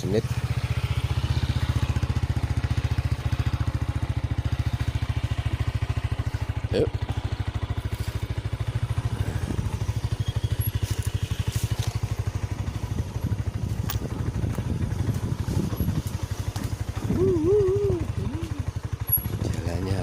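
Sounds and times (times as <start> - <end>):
motorcycle engine under load: 0.0 - 20.0.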